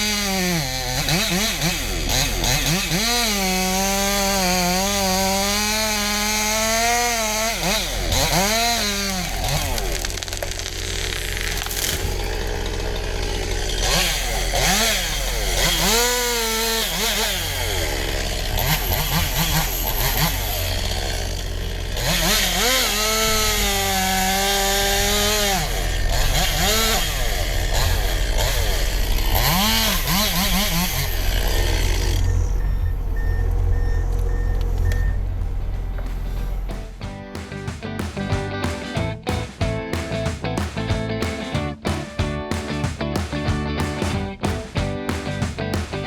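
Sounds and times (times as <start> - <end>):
chainsaw revving while cutting: 0.0 - 32.8.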